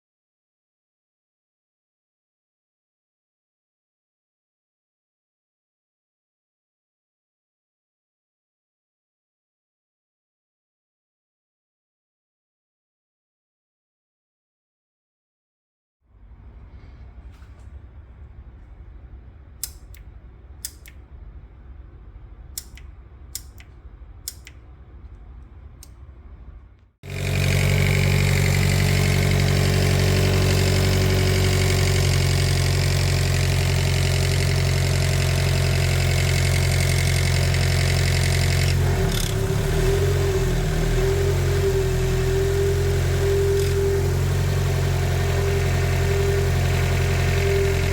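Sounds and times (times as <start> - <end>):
sharp clicks: 19.6 - 21.0, 22.6 - 24.6
car engine running: 27.0 - 47.9.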